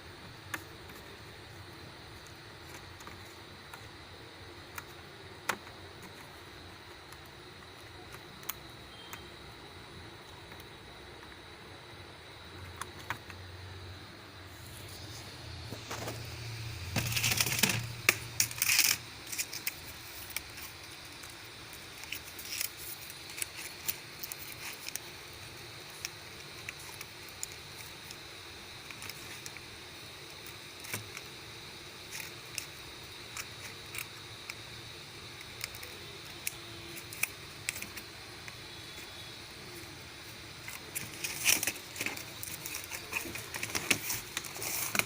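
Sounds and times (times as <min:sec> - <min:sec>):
faint high-pitched tone: 0:08.0 - 0:09.5.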